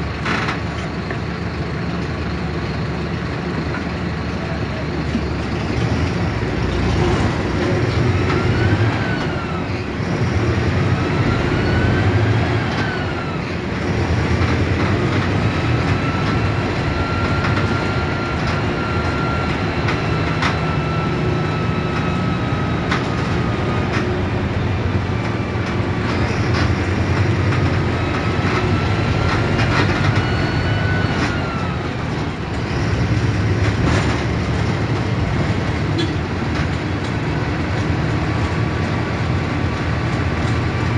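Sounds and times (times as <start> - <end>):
bus engine rumble and whine: 0.0 - 40.9.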